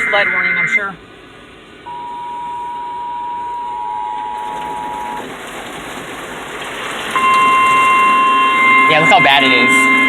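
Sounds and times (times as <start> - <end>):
two-note alert tone: 1.9 - 5.2.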